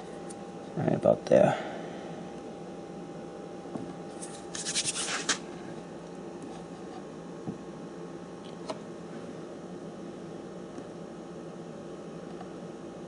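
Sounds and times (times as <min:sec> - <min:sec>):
steady low hum: 0:00.0 - 0:13.0
dry scratching: 0:04.1 - 0:05.4.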